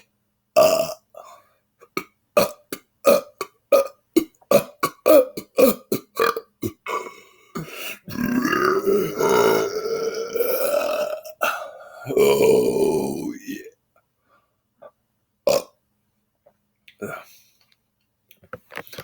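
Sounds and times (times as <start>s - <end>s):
man burping: 0.6s - 13.8s, 14.8s - 15.8s.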